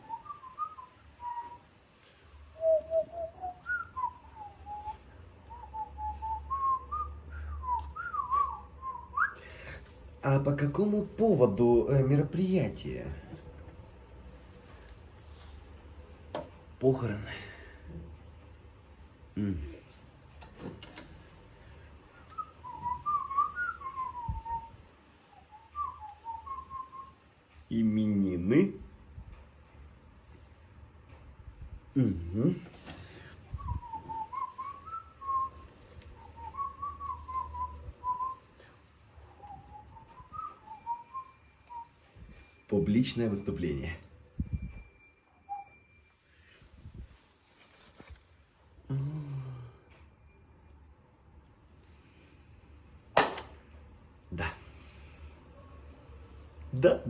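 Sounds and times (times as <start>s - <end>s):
person whistling a tune: 0.0s - 9.8s, 22.2s - 24.8s, 25.4s - 27.2s, 33.1s - 42.6s, 44.4s - 46.0s, 48.9s - 50.4s.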